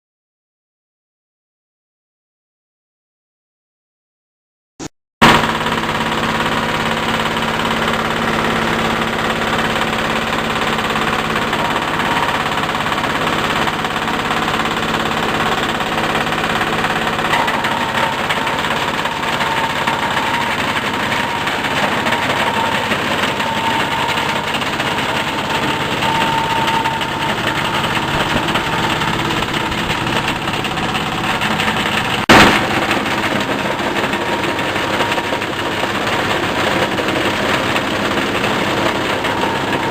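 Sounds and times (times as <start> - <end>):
shredding machine running: 5.2 - 39.9
sharp crack: 24.5 - 34.3.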